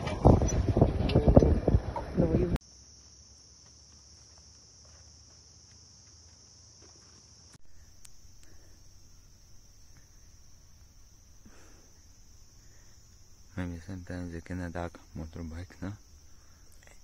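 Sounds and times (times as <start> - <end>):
wind noise: 0.0 - 2.6
night insects trilling: 2.6 - 17.0.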